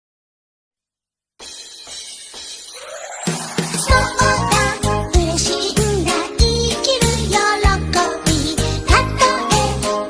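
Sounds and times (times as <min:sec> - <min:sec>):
upbeat background music: 0:02.7 - 0:10.0.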